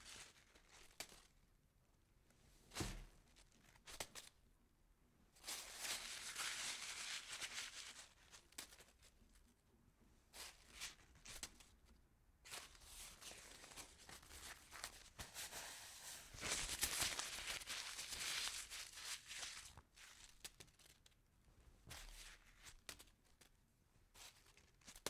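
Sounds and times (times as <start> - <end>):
paper crumpling: 14.4 - 19.8.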